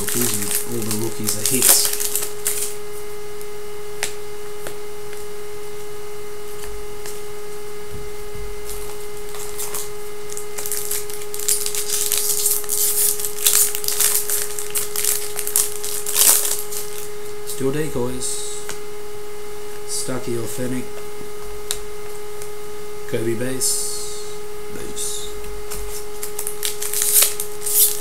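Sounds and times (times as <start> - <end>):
foil wrappers crinkling: 0.0 - 3.1, 4.0 - 7.7, 8.6 - 17.6, 25.7 - 28.0
steady single tone hum: 0.0 - 28.0
cards being shuffled: 25.7 - 28.0.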